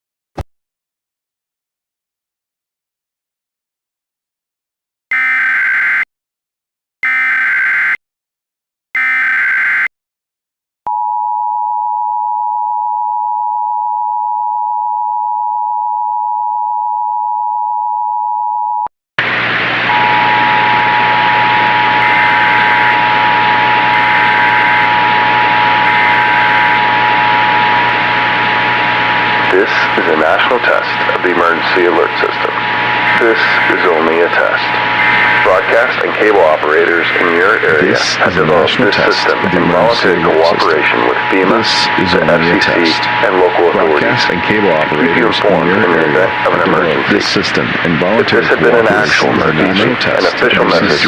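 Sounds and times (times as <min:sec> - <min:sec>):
two-tone attention signal: 0:05.1 - 0:06.1, 0:07.0 - 0:08.0, 0:09.0 - 0:09.9, 0:19.9 - 0:26.9
short buzzy data bursts: 0:25.8 - 0:26.8, 0:34.7 - 0:35.6
loud noise hiss: 0:29.2 - 0:51.0.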